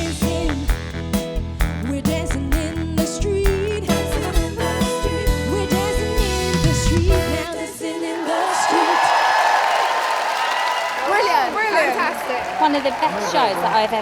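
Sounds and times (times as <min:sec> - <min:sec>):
upbeat soul song with vocals: 0:00.0 - 0:09.8.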